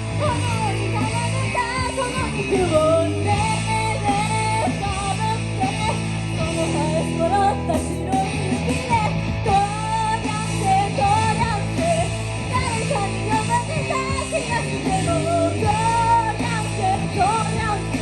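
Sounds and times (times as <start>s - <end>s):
rock band playing: 0.0s - 18.0s
high bending melody line: 6.6s - 8.7s.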